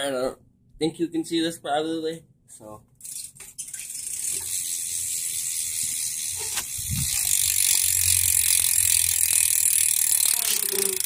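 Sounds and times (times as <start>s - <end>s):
bike hub freewheel clicking: 3.0s - 11.0s.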